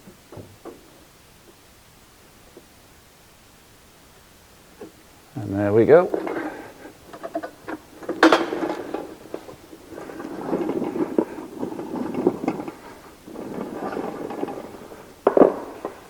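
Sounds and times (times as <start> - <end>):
wheeled lift rattling on floor: 6.0 - 16.0.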